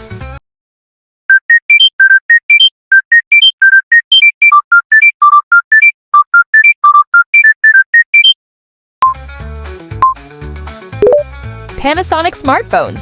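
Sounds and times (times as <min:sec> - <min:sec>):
electronic beeping ringtone: 0:01.3 - 0:08.4, 0:11.0 - 0:11.2.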